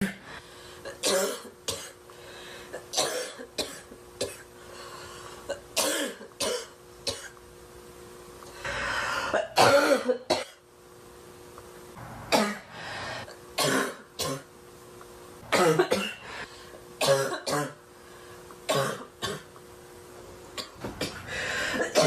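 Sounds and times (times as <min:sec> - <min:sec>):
woman barking cough: 0:00.9 - 0:02.0, 0:02.8 - 0:04.5, 0:05.8 - 0:07.3, 0:09.4 - 0:10.6, 0:12.3 - 0:12.7, 0:13.6 - 0:14.5, 0:15.5 - 0:16.3, 0:17.0 - 0:17.8, 0:18.7 - 0:19.5, 0:20.6 - 0:22.0.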